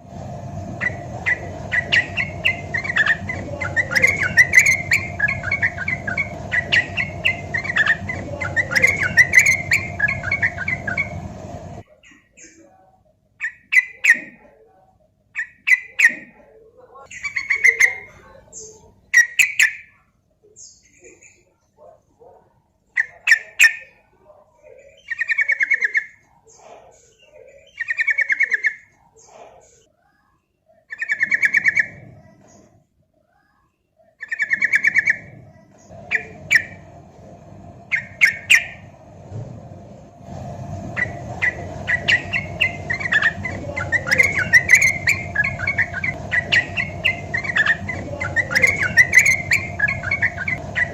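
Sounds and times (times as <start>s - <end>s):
bulbul singing bubbling song: 0.8s - 11.3s, 34.2s - 36.8s, 37.8s - 38.9s, 40.9s - 50.9s.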